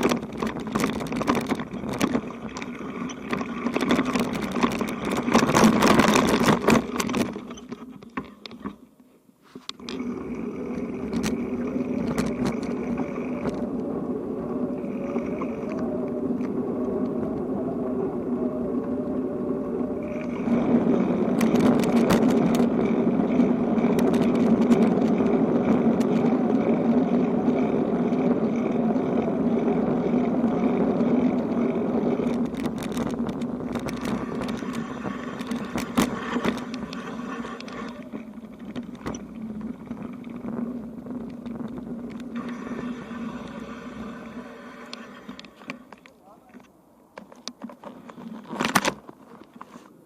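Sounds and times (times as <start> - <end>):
vehicle humming: 9.8 - 46.8.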